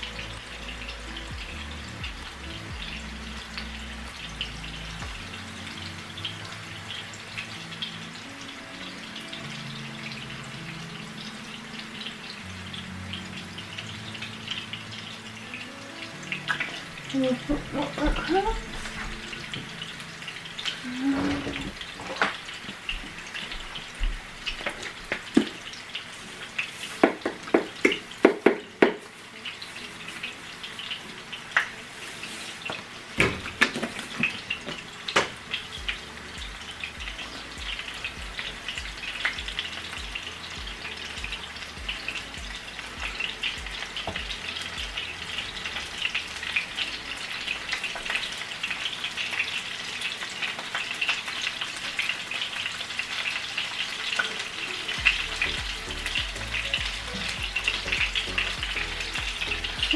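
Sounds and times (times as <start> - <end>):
faint steady hiss: 0.0 - 59.9
small crackles and pops: 32.6 - 57.0
meatballs sizzling in a pan: 34.5 - 59.9.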